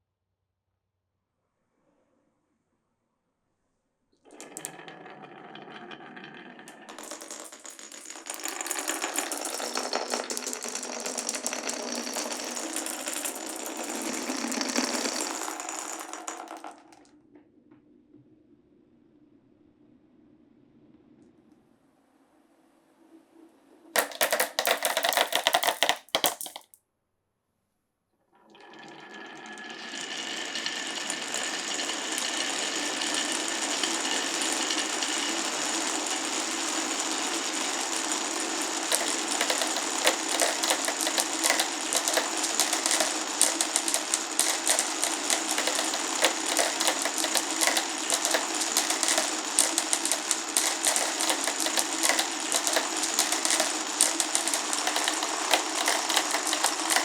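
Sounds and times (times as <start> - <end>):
marbles rattling along a track: 4.3 - 17.0, 24.0 - 26.8, 29.4 - 57.0.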